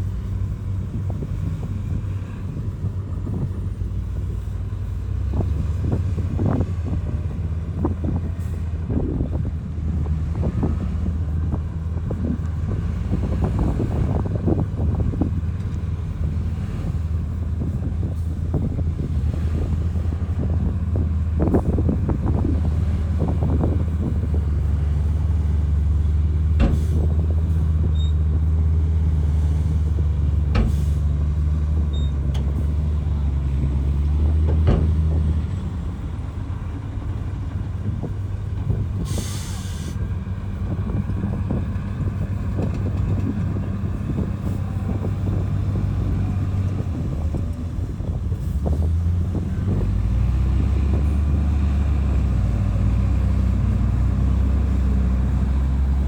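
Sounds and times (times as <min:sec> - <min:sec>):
diesel machinery engine drone: 0:00.0 - 0:56.0
hissing air burst: 0:39.0 - 0:40.0.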